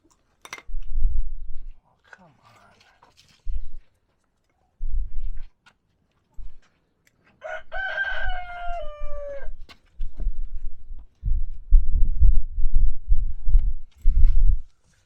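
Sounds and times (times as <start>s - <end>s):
rooster crowing: 7.4s - 9.7s.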